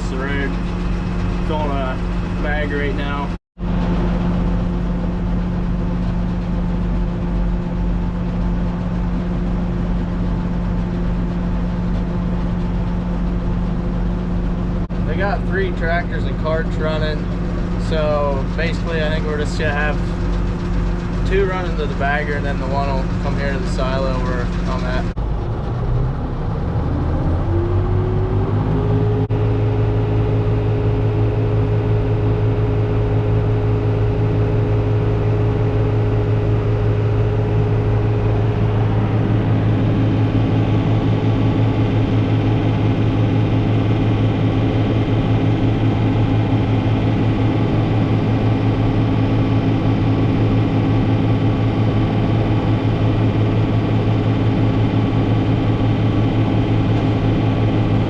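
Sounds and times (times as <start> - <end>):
blower whine: 0.0 - 58.0
tractor engine running: 0.0 - 58.0.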